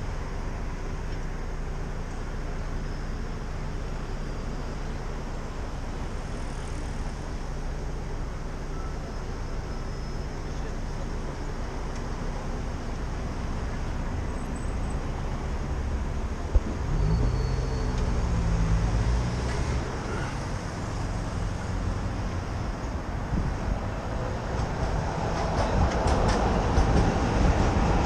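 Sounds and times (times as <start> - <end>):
city street traffic rumble: 0.0 - 28.0
vehicle engine pulling away: 1.7 - 22.7.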